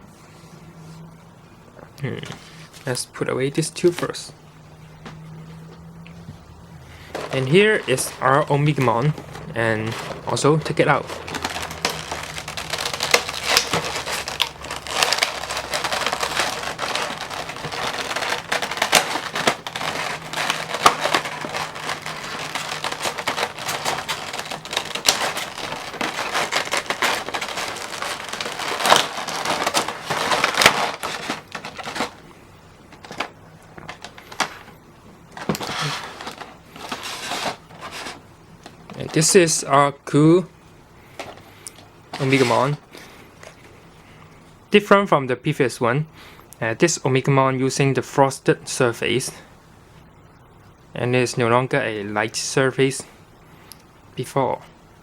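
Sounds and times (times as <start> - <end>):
packaging crinkling and rustling: 6.8 - 39.6, 41.0 - 43.8.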